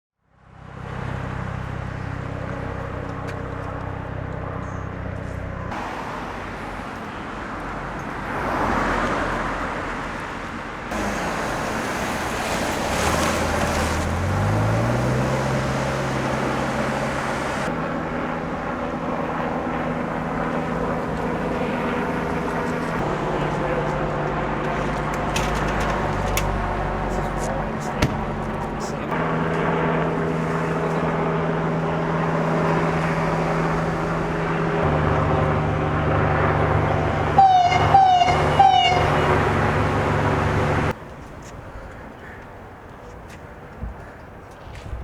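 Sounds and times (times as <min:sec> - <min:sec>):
traffic noise: 0:00.2 - 0:45.0
vehicle engines running: 0:00.3 - 0:45.0.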